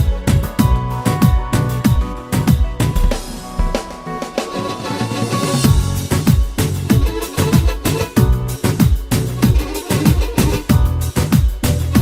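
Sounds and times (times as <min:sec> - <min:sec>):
deep falling bass drum hits: 0:02.8 - 0:04.9
electronic dance music: 0:02.8 - 0:08.2.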